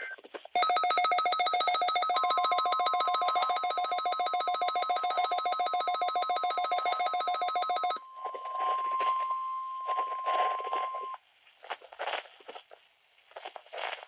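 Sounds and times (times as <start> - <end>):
fast-pulsing electronic alarm beep: 0.6 - 8.0.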